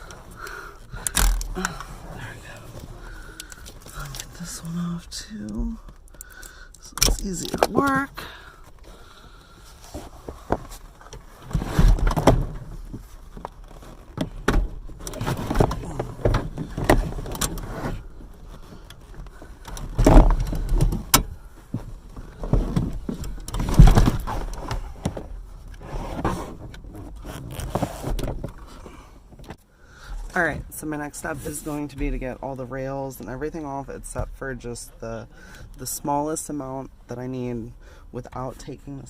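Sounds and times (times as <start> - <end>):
clunks and scrapes on metal frame: 6.4 - 30.4.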